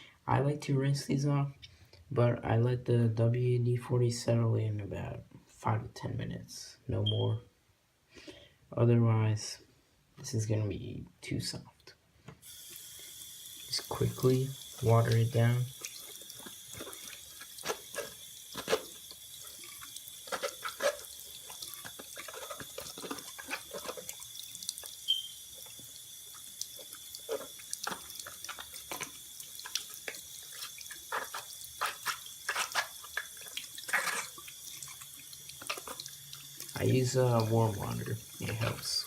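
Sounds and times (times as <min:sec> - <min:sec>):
tap water running into a sink: 0:12.4 - 0:39.0.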